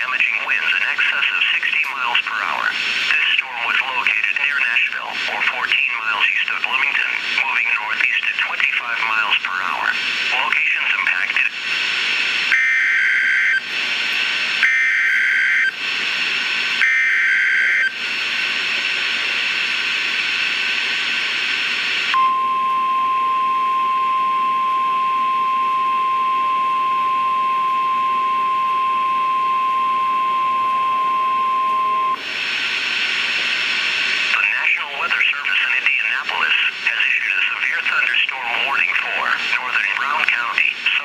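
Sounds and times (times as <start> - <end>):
radio hiss: 0.0 - 22.2, 24.5 - 41.0
steady high alarm beep: 12.5 - 13.6, 14.6 - 15.8, 16.8 - 18.0, 22.2 - 32.2.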